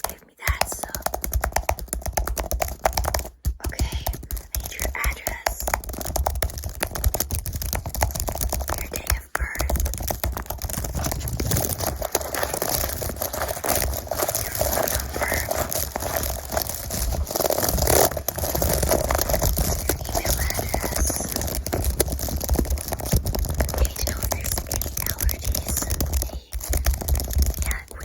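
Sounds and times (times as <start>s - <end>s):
crinkling and scratching: 0.0s - 28.0s.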